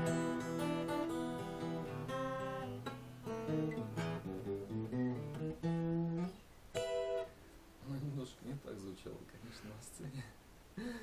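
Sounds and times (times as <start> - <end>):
acoustic guitar strumming: 0.0 - 8.0.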